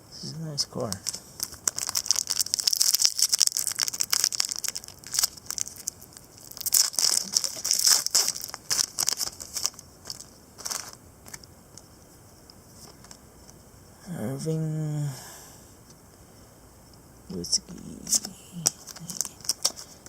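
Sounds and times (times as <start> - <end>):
foil wrapper crinkling and tearing: 0.8 - 11.4, 18.1 - 20.0.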